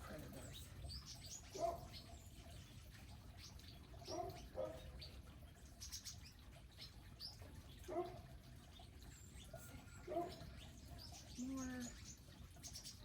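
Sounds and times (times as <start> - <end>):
birds chirping: 0.0 - 13.0.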